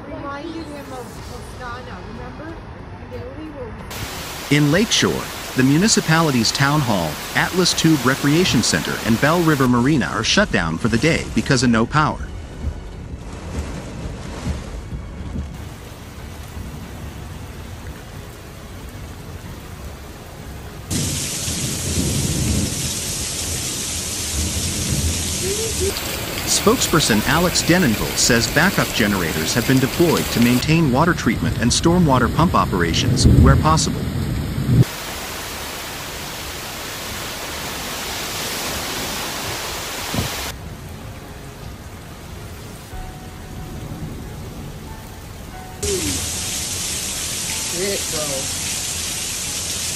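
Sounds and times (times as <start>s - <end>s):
rain falling: 3.9s - 49.9s
low rumbling thunder: 20.9s - 30.4s, 32.6s - 34.9s.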